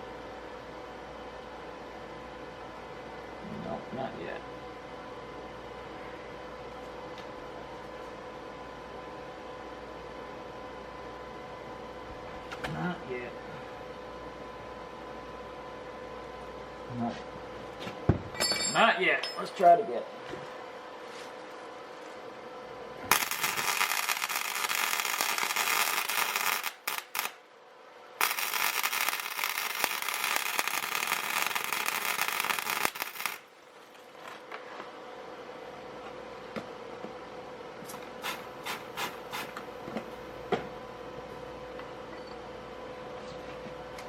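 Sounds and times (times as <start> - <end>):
welding arc crackling: 23.1 - 27.5, 28.2 - 33.5.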